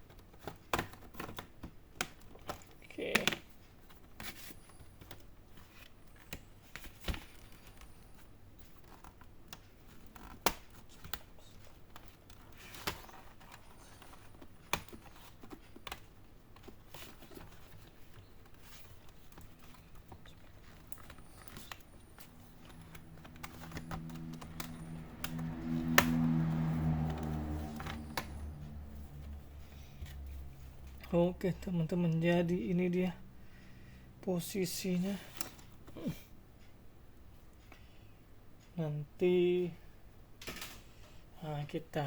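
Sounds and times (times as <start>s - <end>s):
low hum: 17.1s - 32.2s.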